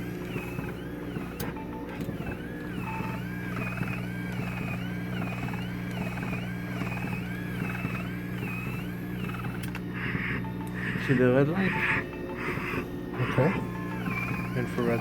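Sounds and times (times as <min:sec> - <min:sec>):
machine humming: 0:00.0 - 0:15.0
warbling tone: 0:04.6 - 0:15.0.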